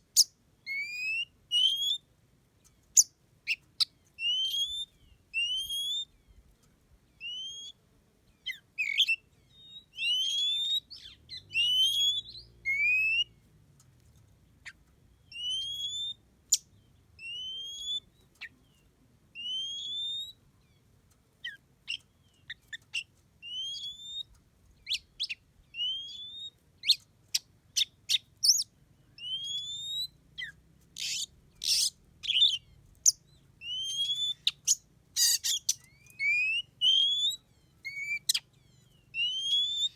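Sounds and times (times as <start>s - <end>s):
songbird whistled notes: 0.2s - 2.0s, 3.0s - 6.4s, 7.2s - 7.8s, 8.4s - 13.4s, 15.2s - 18.5s, 19.4s - 20.4s, 21.4s - 39.9s
bird sharp chips: 30.4s - 38.5s.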